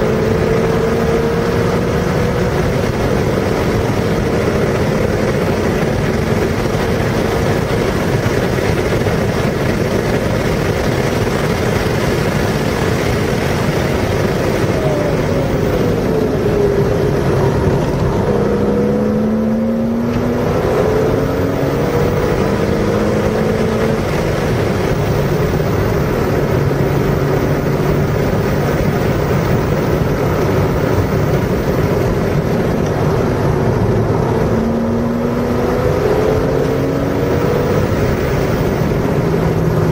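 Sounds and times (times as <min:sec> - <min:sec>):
car engine under load: 0:00.0 - 0:39.9
wind and road noise: 0:00.0 - 0:39.9.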